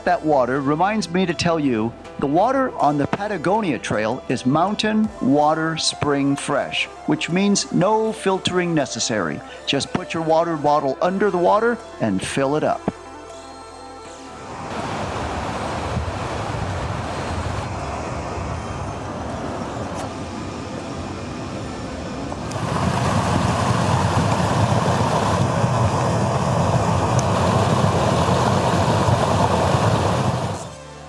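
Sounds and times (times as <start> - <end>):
rushing stream water: 14.4 - 17.7, 22.4 - 30.7.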